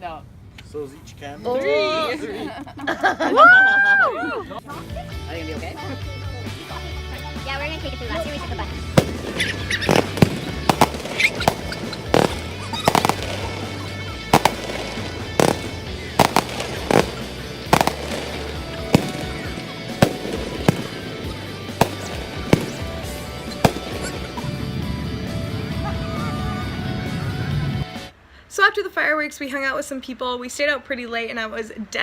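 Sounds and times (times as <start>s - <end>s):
music playing: 4.6s - 28.1s
fireworks bangs: 8.2s - 25.8s.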